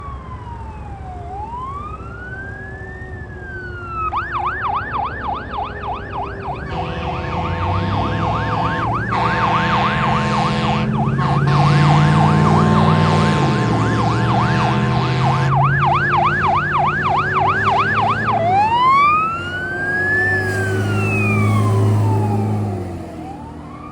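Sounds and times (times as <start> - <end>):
fire engine siren wail and yelp: 0.0 - 23.9
deeper steady sound: 4.0 - 23.9.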